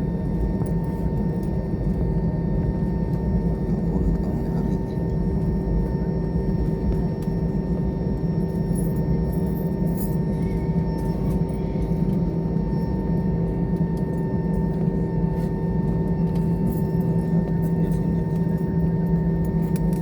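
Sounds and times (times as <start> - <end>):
jet engine rumble and hum: 0.0 - 20.0.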